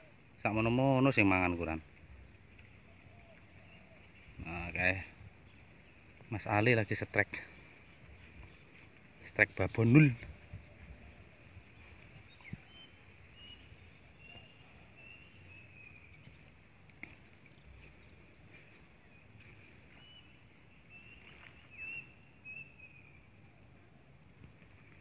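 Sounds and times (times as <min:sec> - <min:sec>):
high insect drone: 0:00.0 - 0:25.0
bird chirps: 0:02.6 - 0:23.5
faint clicks: 0:07.3 - 0:09.2.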